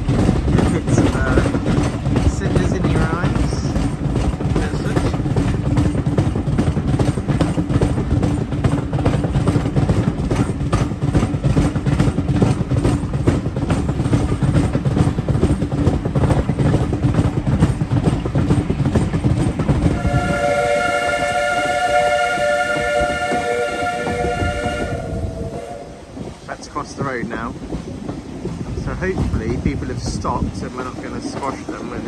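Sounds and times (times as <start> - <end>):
steam train rumbling: 0.0 - 32.0
steam whistle chord: 20.0 - 26.0.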